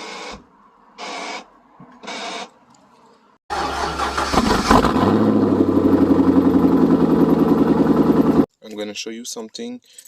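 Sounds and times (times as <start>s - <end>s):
car engine idling: 3.5s - 8.5s.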